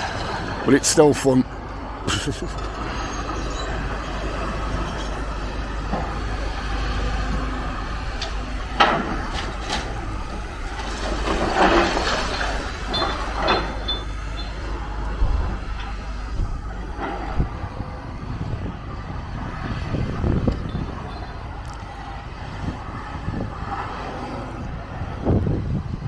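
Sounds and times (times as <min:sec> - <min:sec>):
rubble crashing down: 0:02.6 - 0:16.2
wind noise on microphone: 0:02.8 - 0:26.0.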